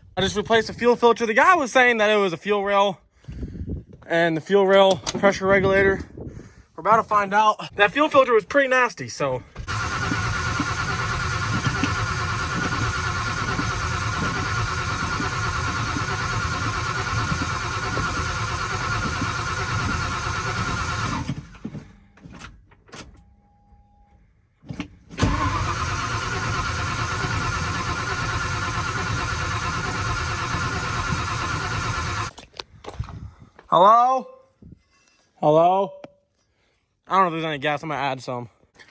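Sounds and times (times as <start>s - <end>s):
engine cranking without starting: 9.5s - 22.0s, 25.0s - 32.5s.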